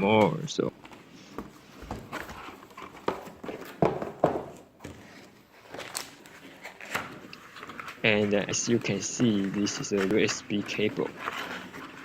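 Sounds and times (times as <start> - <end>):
packaging rustling: 5.0 - 12.0.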